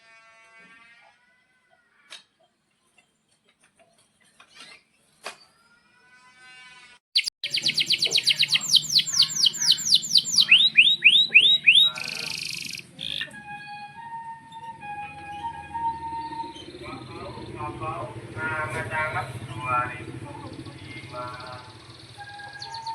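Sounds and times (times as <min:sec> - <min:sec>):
canary singing: 0:07.2 - 0:13.6, 0:14.6 - 0:17.8, 0:19.4 - 0:22.9.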